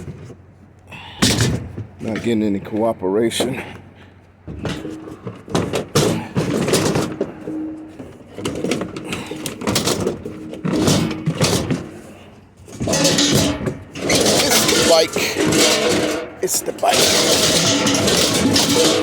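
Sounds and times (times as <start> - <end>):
scrap knocking and scraping: 4.5 - 19.0.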